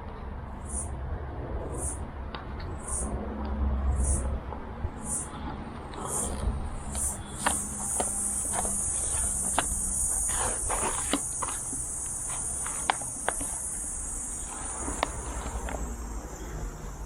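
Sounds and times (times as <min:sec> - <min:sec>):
insects chirring: 0:00.6 - 0:01.0, 0:01.7 - 0:02.1, 0:02.7 - 0:03.2, 0:03.9 - 0:17.0
vinyl sign being peeled: 0:07.0 - 0:13.8.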